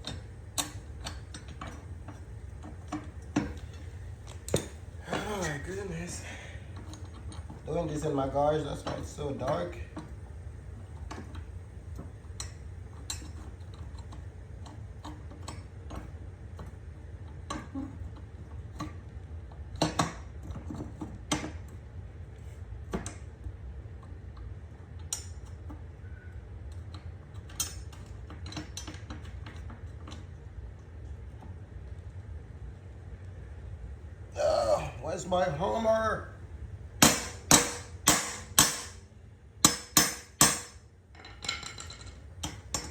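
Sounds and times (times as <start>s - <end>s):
steady low hum: 0.0s - 17.8s, 30.4s - 42.9s.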